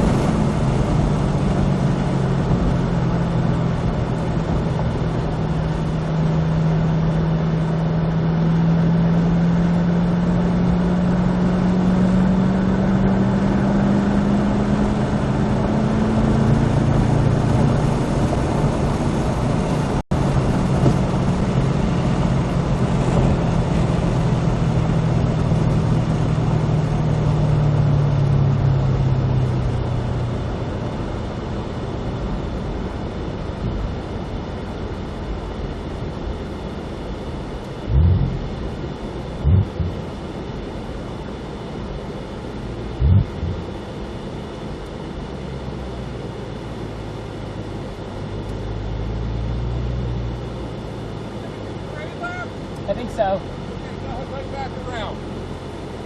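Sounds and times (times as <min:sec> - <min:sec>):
car engine revving: 0:00.0 - 0:31.2, 0:37.3 - 0:40.6, 0:42.4 - 0:44.4.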